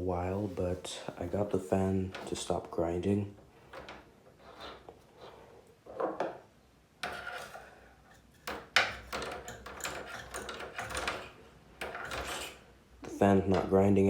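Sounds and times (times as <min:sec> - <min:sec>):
knocks and rattles from handling: 0:01.2 - 0:02.7, 0:03.3 - 0:04.9, 0:05.9 - 0:13.8.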